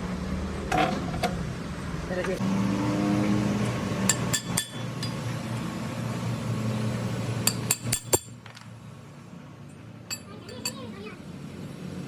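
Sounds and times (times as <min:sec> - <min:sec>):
low machine hum: 0:00.0 - 0:12.0
metal clinking on metal: 0:04.1 - 0:05.2, 0:07.4 - 0:08.7, 0:10.1 - 0:10.9.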